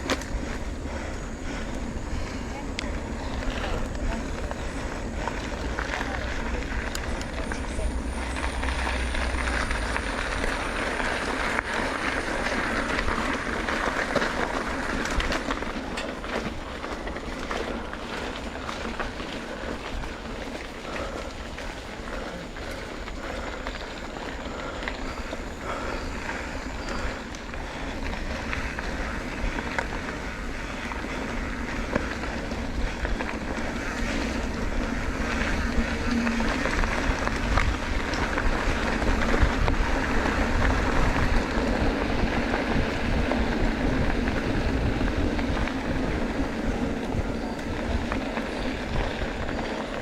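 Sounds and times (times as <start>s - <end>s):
bicycle tyre road noise: 0.0s - 50.0s
wind buffeting microphone: 0.0s - 50.0s.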